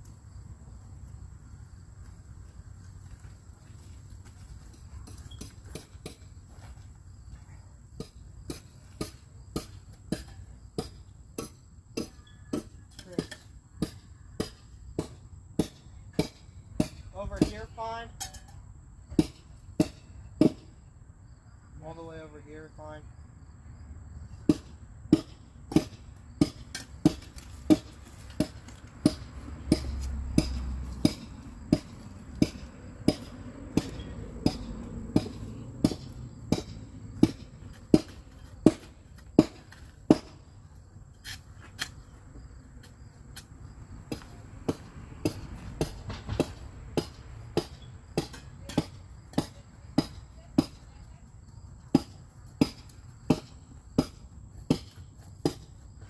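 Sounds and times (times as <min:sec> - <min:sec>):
hammering on wood: 0:08.0 - 0:17.7, 0:19.1 - 0:20.7, 0:24.4 - 0:40.4, 0:44.1 - 0:51.0, 0:51.9 - 0:55.7.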